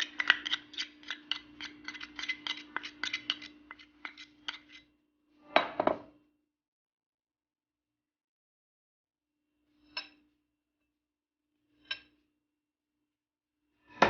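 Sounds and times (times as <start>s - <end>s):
metal spoon scraping mixing bowl: 0.0s - 4.9s.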